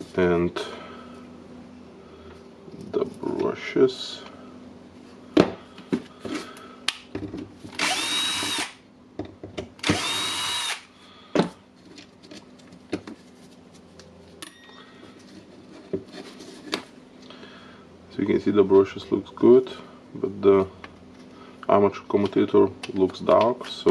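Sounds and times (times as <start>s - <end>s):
small electric motor whine: 7.8s - 8.8s, 9.8s - 10.9s.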